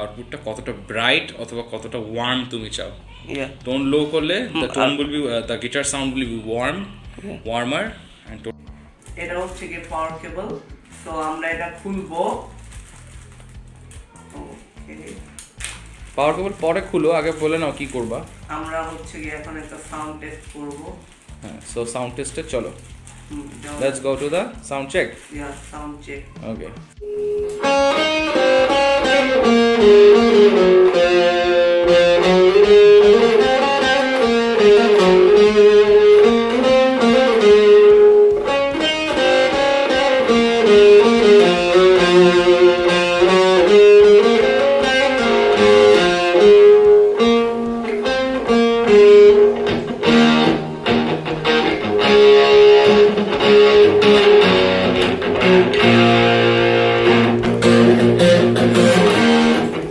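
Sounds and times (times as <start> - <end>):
electric guitar melody: 26.9 - 59.9.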